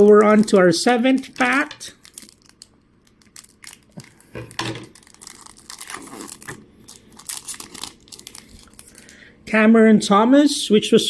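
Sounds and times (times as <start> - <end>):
wrapper tearing and crinkling: 0.0 - 9.2.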